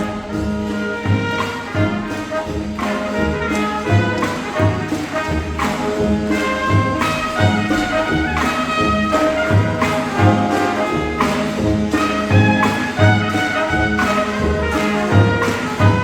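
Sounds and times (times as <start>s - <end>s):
brass melody: 0.0s - 16.0s
low drum beat: 0.0s - 16.0s.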